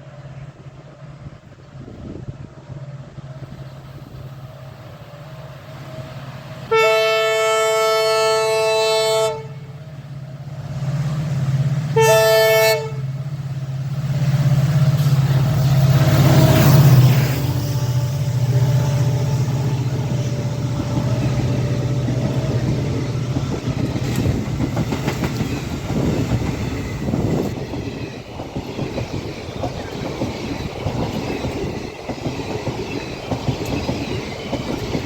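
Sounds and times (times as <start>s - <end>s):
passing train rumble: 0.0s - 35.0s
locomotive horn blast: 6.7s - 9.7s, 12.0s - 13.1s.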